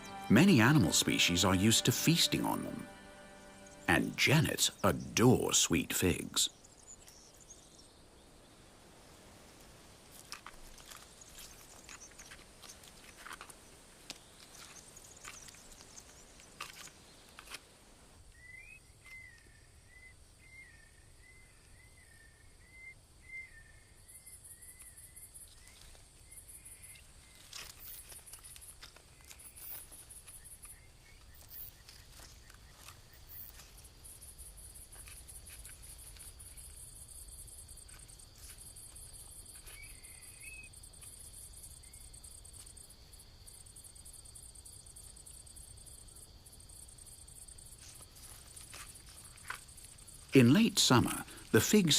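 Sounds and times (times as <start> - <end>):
crickets chirping: 0.0 - 51.9
rustles in vegetation: 8.6 - 18.0, 25.4 - 43.4, 47.6 - 50.3.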